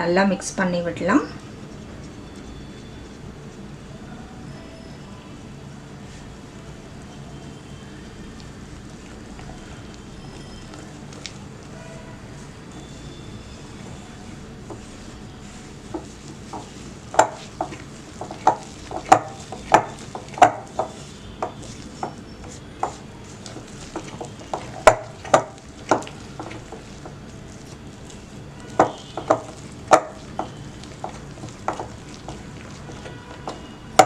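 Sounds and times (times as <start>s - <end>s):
batter stirred in a bowl: 5.4s - 34.0s
utensil tapping against bowl: 14.6s - 34.0s.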